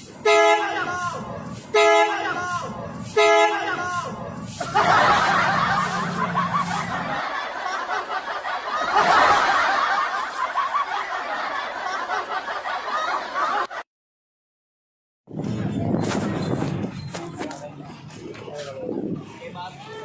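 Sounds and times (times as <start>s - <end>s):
group of people laughing: 3.6s - 13.8s.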